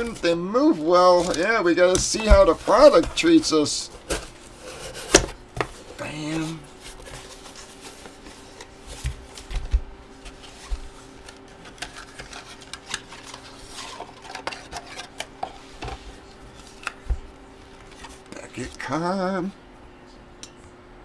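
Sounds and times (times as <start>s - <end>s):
packaging clicks and rustles: 0.0s - 5.3s, 6.9s - 16.0s
faint steady hum: 0.0s - 21.0s.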